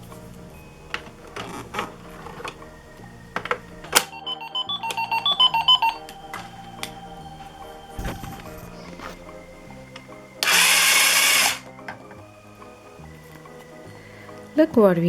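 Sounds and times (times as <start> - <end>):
background music: 0.0 - 15.0
electronic jingle of beeps: 3.0 - 11.9.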